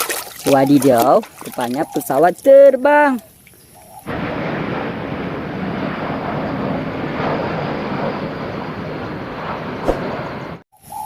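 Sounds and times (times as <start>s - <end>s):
airplane engine rushing: 4.1s - 10.6s.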